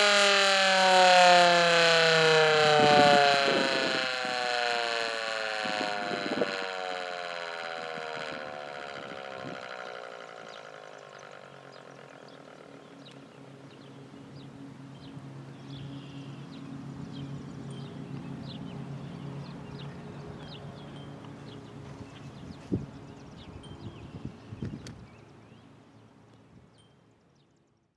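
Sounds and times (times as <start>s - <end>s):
warning siren winding down: 0.0s - 16.0s
low steady hum: 1.2s - 27.7s
birds chirping: 7.8s - 27.8s.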